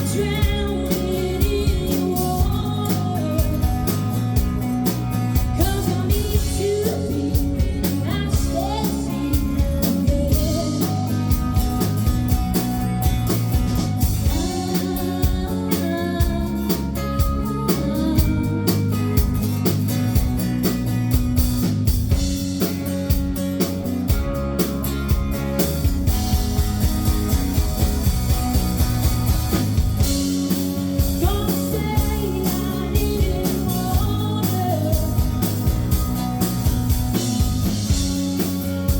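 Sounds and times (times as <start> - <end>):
bass: 0.0 - 38.9
electric guitar: 0.0 - 38.9
person singing: 5.6 - 11.1, 14.3 - 18.9, 31.2 - 35.2
drum beat: 9.4 - 15.5, 19.2 - 38.9.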